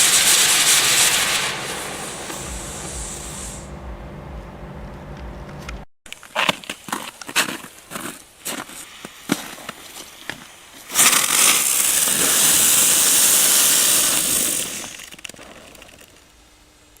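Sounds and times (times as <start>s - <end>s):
firework crackles and pops: 0.0s - 3.7s, 6.1s - 17.0s
firework burning hiss: 0.0s - 3.8s, 7.5s - 17.0s.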